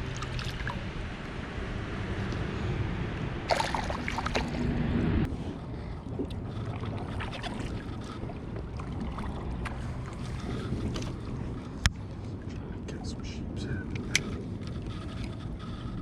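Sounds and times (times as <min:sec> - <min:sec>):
wind noise: 0:00.0 - 0:12.5
water around kayak: 0:00.0 - 0:16.0.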